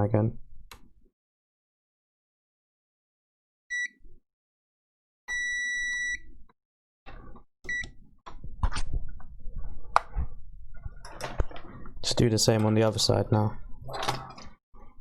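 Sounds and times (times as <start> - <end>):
multimeter beeping: 5.3 - 6.3.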